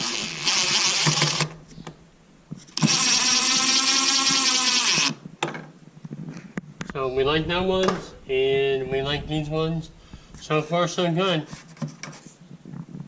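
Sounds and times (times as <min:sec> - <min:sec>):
power drill whining: 0:00.0 - 0:01.6, 0:02.7 - 0:05.2.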